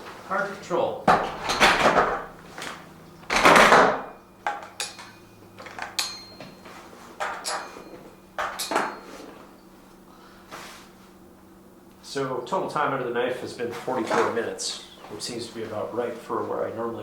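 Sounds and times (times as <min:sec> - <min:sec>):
dumbbells rattling clatter: 0:01.1 - 0:02.4, 0:07.2 - 0:09.0
metal dumbbells clanking: 0:07.2 - 0:09.1.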